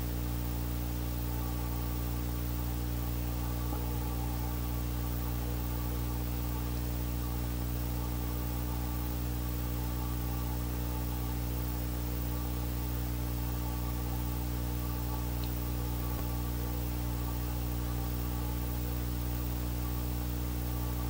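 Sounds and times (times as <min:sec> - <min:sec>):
constant hiss: 0:00.0 - 0:21.0
electrical hum: 0:00.0 - 0:21.0.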